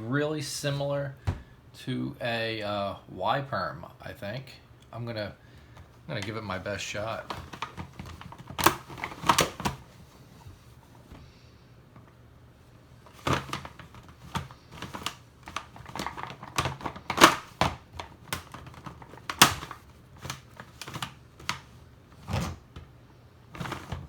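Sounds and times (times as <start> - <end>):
plastic puzzle cube clacking: 7.2 - 9.8, 13.1 - 21.7.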